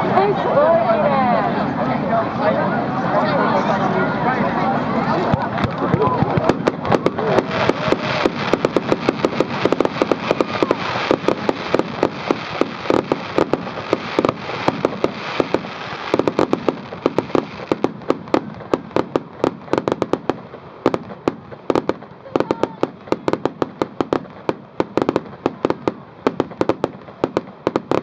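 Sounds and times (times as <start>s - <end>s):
fireworks crackling: 5.1s - 28.0s.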